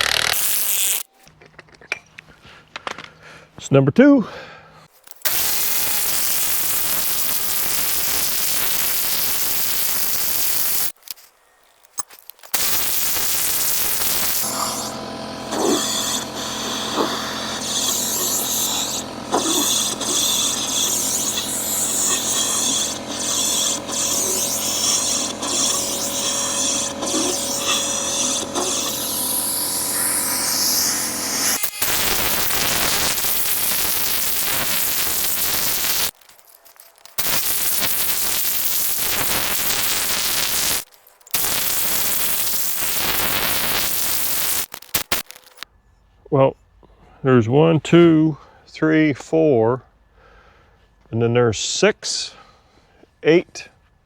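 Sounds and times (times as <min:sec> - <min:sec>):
impact wrench driving bolts: 0:00.0 - 0:03.2, 0:11.8 - 0:45.6
loud steady hiss: 0:05.1 - 0:11.2, 0:12.3 - 0:14.7, 0:29.8 - 0:36.2, 0:37.0 - 0:45.6.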